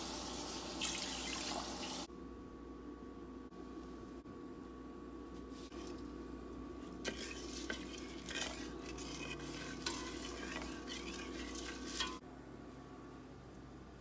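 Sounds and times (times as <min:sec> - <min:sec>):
utensil scraping in a pan: 0:05.5 - 0:06.2, 0:06.8 - 0:12.2.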